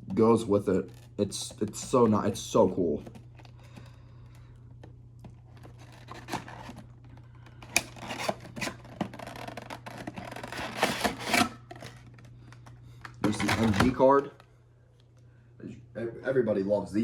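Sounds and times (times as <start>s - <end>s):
steady low hum: 0.0s - 17.0s
cardboard packaging scraping and rustling: 5.4s - 12.2s, 13.3s - 14.0s.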